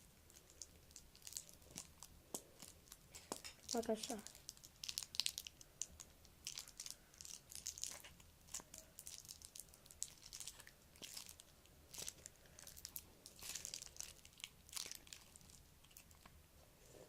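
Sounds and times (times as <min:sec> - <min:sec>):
plastic tube crinkling: 0:00.0 - 0:16.4.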